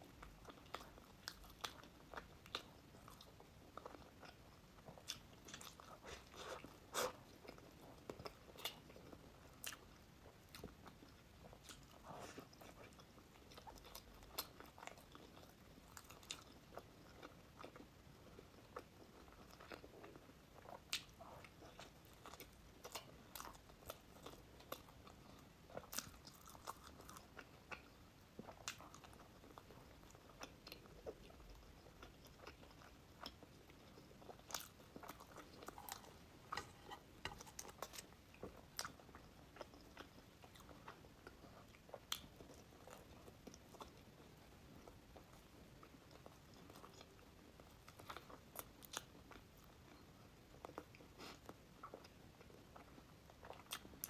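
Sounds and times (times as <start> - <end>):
person chewing crunchy pastry: 0.0 - 54.0.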